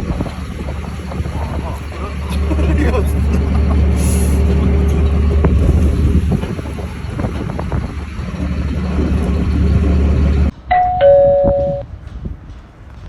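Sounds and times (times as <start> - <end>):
engine running with low hum: 0.0 - 11.8
two-note ding-dong chime: 10.7 - 11.9.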